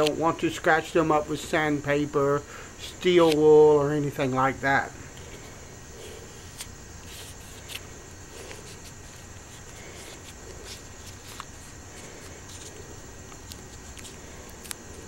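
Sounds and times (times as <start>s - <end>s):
steady background hiss: 0.0s - 15.0s
hands handling knife and tape: 2.8s - 3.5s, 5.2s - 15.0s.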